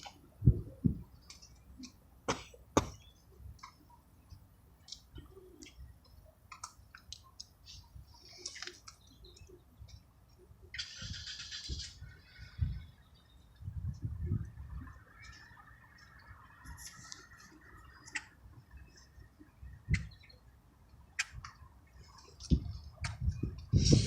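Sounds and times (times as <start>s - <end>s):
pigeons pecking on ground: 3.3s - 11.7s.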